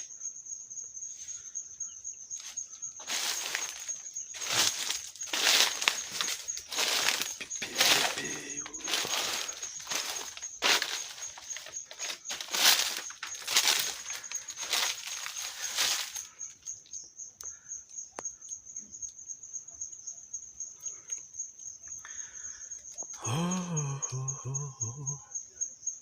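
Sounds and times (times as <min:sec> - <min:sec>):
insect trilling: 0:01.8 - 0:17.0, 0:21.9 - 0:25.4
rustling and crunching leaves: 0:02.4 - 0:16.6.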